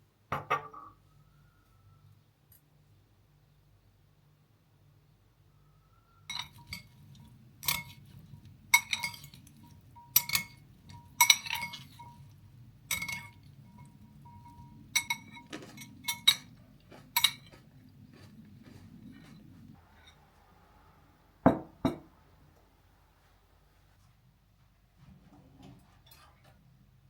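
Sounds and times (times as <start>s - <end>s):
utensil clinking against dishes: 6.3s - 17.6s.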